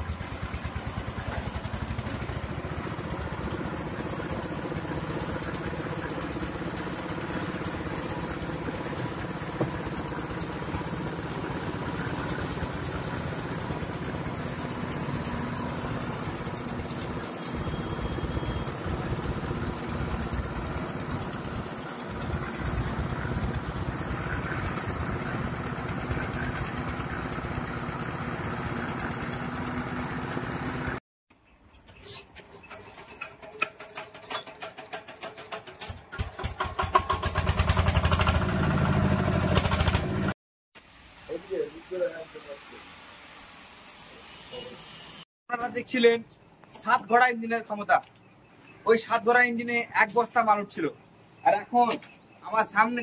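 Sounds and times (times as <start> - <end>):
diesel engine running: 0.0 - 31.0, 36.2 - 40.3.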